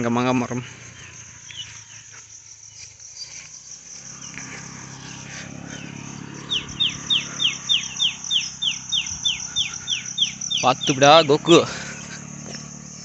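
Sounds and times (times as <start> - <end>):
insects trilling: 0.0 - 13.0
sharp chirps falling in pitch: 6.0 - 11.5.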